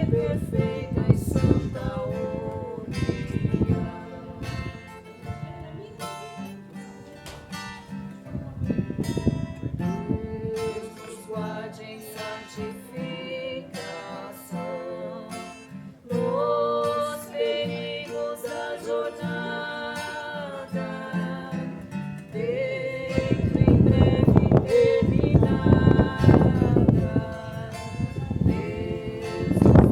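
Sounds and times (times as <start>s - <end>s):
wind buffeting microphone: 0.0s - 5.8s, 7.6s - 11.0s, 22.4s - 29.9s
acoustic guitar strumming: 0.0s - 29.9s
wavering held melody: 7.8s - 29.9s.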